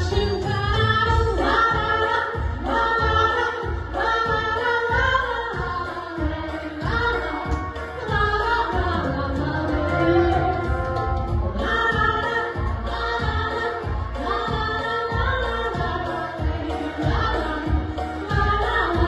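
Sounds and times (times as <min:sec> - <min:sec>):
pop backing track: 0:00.0 - 0:19.0
women singing duet: 0:00.0 - 0:19.0.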